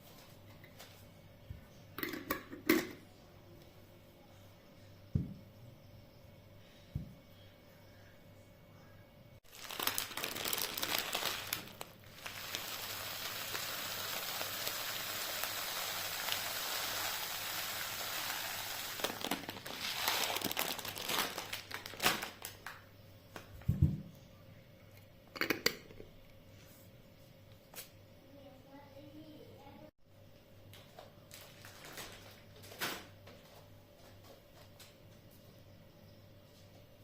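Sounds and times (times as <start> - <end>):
packaging crinkling: 9.5 - 22.8, 31.3 - 33.0
steady hiss: 9.7 - 20.5.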